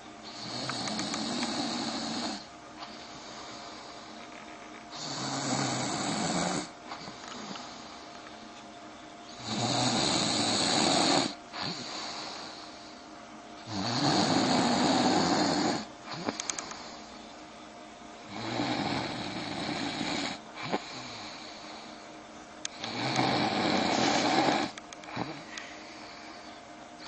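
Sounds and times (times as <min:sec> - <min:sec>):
quiet breathing: 0:00.0 - 0:08.6, 0:10.0 - 0:13.2, 0:14.7 - 0:17.3, 0:19.3 - 0:27.0
man snoring: 0:00.2 - 0:02.5, 0:04.9 - 0:07.2, 0:09.4 - 0:12.8, 0:13.7 - 0:16.4, 0:18.3 - 0:21.9, 0:22.7 - 0:25.6.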